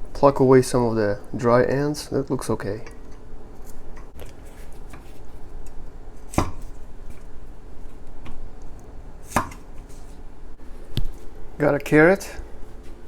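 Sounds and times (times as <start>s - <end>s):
knife chopping on cutting board: 6.3s - 7.2s, 9.2s - 10.0s.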